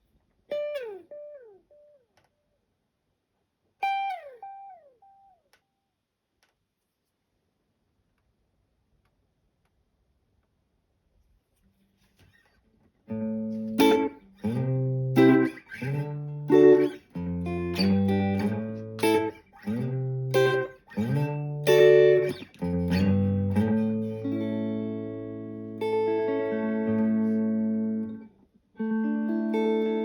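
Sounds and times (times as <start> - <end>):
electric guitar chords with delay: 13.3 - 28.2, 28.8 - 30.0.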